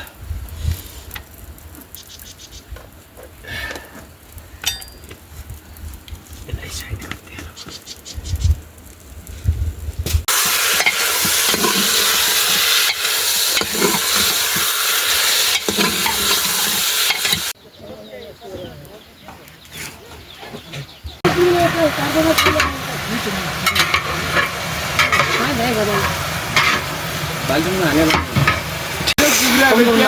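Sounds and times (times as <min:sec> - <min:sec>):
food sizzling in a frying pan: 0:07.6 - 0:17.6, 0:21.2 - 0:30.0.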